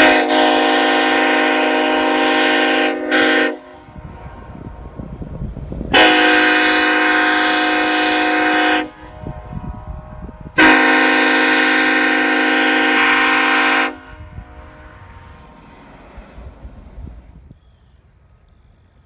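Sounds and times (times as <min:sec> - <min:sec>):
locomotive air horn chord: 0:00.0 - 0:05.0, 0:05.9 - 0:15.4.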